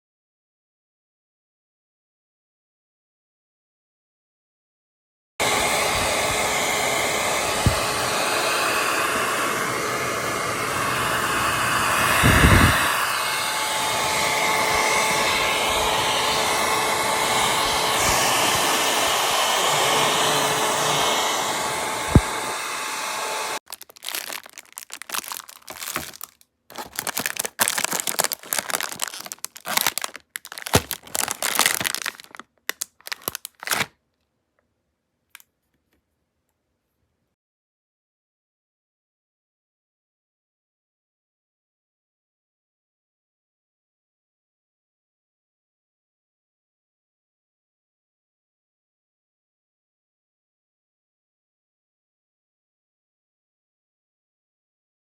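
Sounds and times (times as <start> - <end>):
hot air brush blowing: 5.4 - 33.9
crinkling and crackling: 23.7 - 33.9.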